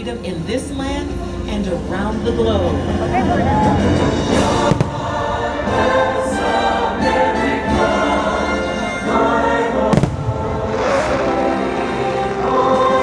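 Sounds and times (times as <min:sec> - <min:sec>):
choir singing over orchestra: 0:01.2 - 0:13.0
sharp bang: 0:04.3 - 0:05.2.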